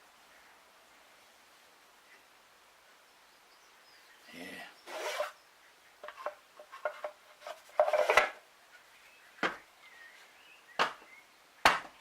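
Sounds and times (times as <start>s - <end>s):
wooden clatter: 6.0s - 8.4s
sharp wooden knocks: 10.8s - 12.0s.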